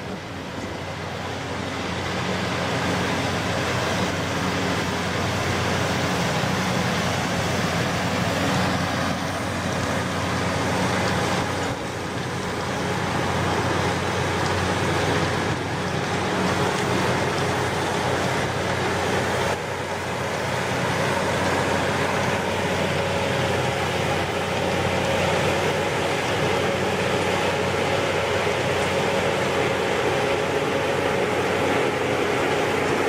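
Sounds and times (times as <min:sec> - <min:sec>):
machine engine droning: 0:00.0 - 0:33.0.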